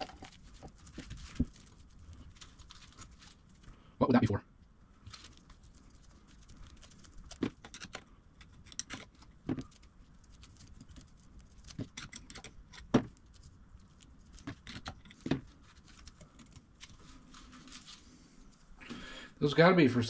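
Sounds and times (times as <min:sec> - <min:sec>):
metal parts clicking and tapping: 0:07.6 - 0:09.3, 0:11.7 - 0:13.0.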